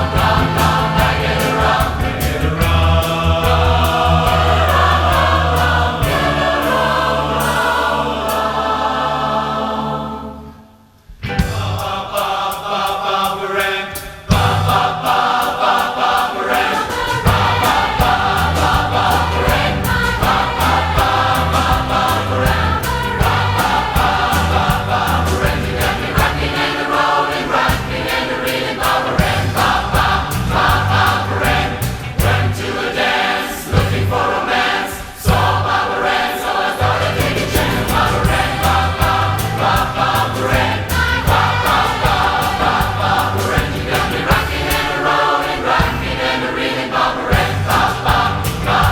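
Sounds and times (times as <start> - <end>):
beat and bass line: 0.0 - 7.1, 17.3 - 26.6, 36.8 - 44.7
large choir singing pop: 0.0 - 48.9.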